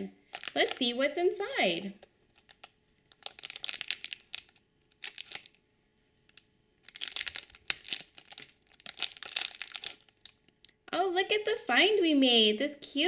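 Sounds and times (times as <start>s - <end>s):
plastic packaging crinkling and tearing: 0.3s - 1.0s, 2.3s - 5.6s, 6.3s - 10.8s.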